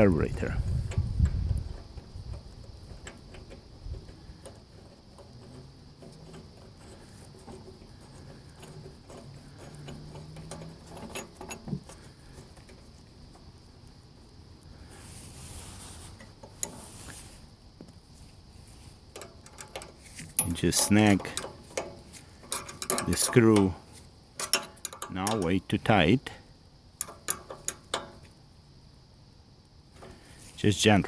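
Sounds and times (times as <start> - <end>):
metal parts clicking and tapping: 0.7 - 13.5, 19.1 - 26.0, 27.0 - 28.4
brief hiss: 14.8 - 17.5.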